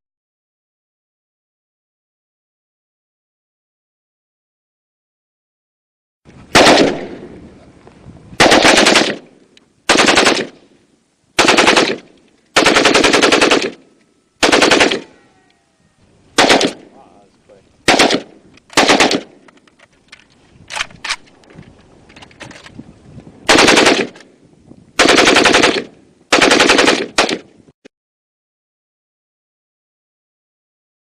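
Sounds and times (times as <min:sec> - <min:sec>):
rifle automatic bursts: 0:06.6 - 0:07.2, 0:08.4 - 0:09.3, 0:09.9 - 0:10.6, 0:11.4 - 0:13.8, 0:14.4 - 0:15.1, 0:16.4 - 0:16.9, 0:17.9 - 0:19.4, 0:23.5 - 0:24.2, 0:25.0 - 0:27.5.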